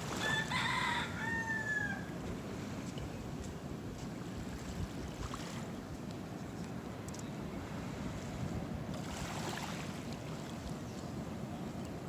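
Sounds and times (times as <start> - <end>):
ocean waves breaking: 0.0 - 0.6, 8.8 - 10.6.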